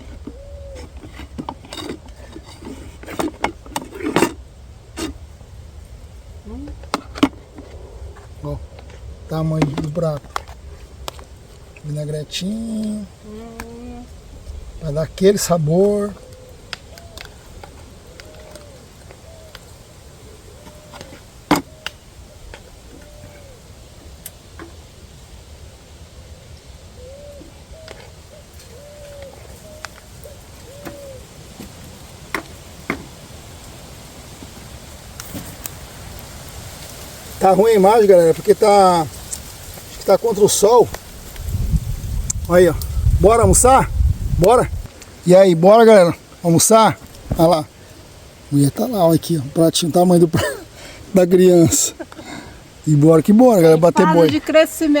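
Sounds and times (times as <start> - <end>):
dove cooing: 0.0 - 3.2, 6.4 - 24.8, 26.2 - 33.1.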